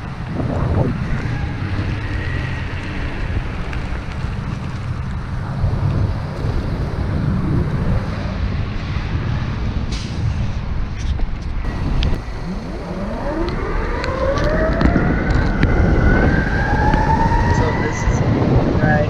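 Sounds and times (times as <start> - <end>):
tyres rolling on pavement: 0.0 - 19.0
wind rushing over microphone: 0.0 - 19.0
electric motor whine: 11.7 - 18.7.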